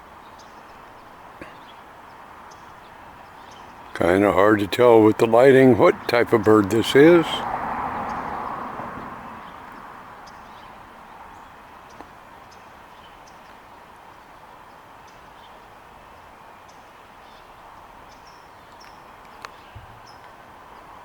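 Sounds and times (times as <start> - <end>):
small birds chirping: 0.0 - 8.4, 9.0 - 21.0
outdoor background hiss: 0.0 - 21.0.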